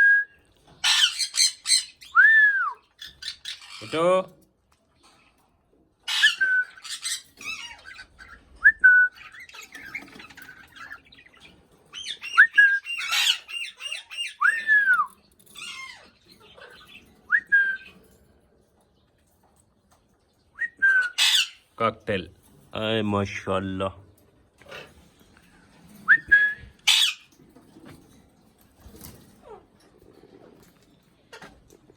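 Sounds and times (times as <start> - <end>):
parrot squawking and whistling: 0.8 - 3.9, 6.1 - 11.0, 11.9 - 17.9, 20.6 - 21.6, 26.1 - 27.3.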